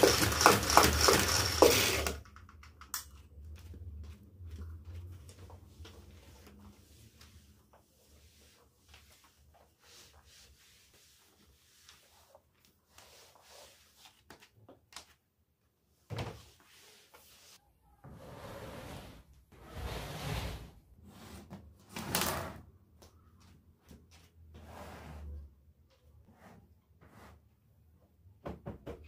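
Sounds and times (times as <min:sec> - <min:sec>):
household things clicking and knocking: 0:00.0 - 0:03.2.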